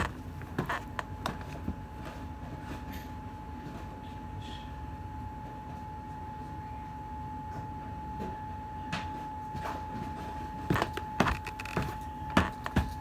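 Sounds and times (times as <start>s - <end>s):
hand tools clicking and knocking: 0.0s - 1.7s, 10.7s - 13.0s.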